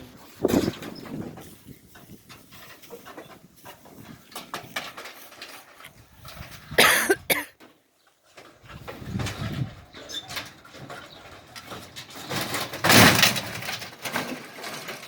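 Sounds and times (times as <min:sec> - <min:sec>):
faint rustling: 0:00.0 - 0:15.0
person coughing: 0:06.8 - 0:07.5.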